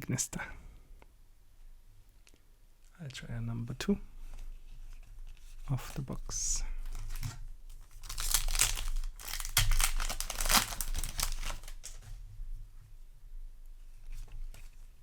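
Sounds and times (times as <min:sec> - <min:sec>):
foil wrapper tearing and crinkling: 0:06.9 - 0:12.1.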